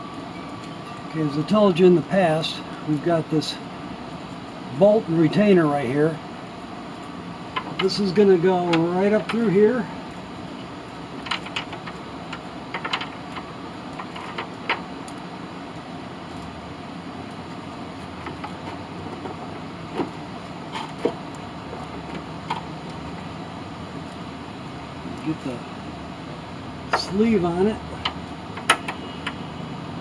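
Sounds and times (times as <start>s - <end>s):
steady background hum: 0.0s - 30.0s
light clicks and taps of metal parts: 6.9s - 9.5s, 10.9s - 15.2s, 27.9s - 29.4s.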